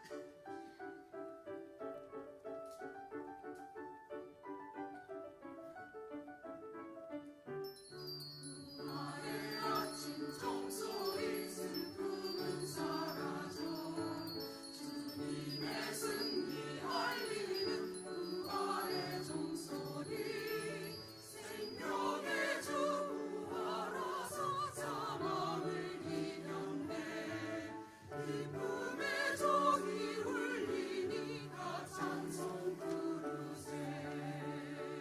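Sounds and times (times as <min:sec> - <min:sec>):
church choir singing: 0:08.8 - 0:35.0.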